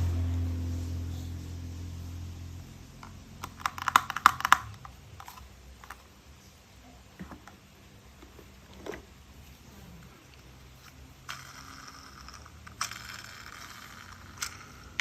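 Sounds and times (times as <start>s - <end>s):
low hum: 0.0s - 6.0s
plastic toy pieces clicking: 3.0s - 6.1s, 10.8s - 15.0s.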